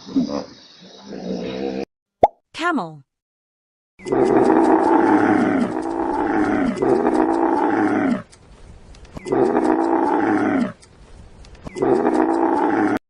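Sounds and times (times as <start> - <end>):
camel calling: 4.0 - 8.3, 11.7 - 13.0.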